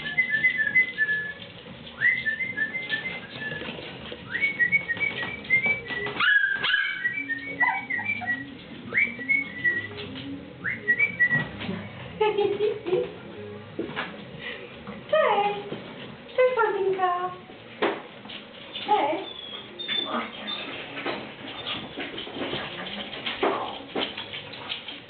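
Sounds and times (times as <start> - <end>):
puppies whimpering: 5.0 - 10.2, 18.7 - 22.8.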